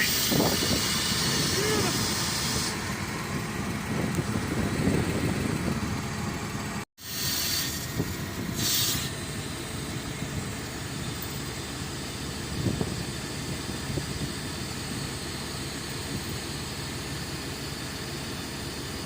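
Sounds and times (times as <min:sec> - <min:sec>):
brief hisses: 0:00.0 - 0:02.8, 0:07.0 - 0:09.2
heavy diesel truck engine running: 0:00.0 - 0:19.0.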